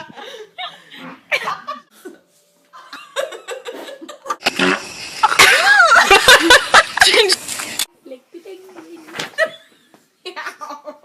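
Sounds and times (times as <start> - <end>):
laughter: 0.0 - 4.4, 5.2 - 7.4, 9.3 - 11.0
fart: 4.4 - 4.9.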